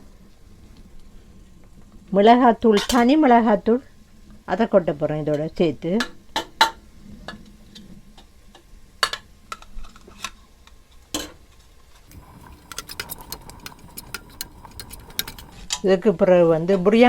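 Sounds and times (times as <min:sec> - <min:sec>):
quick clicks: 0:12.1 - 0:15.7.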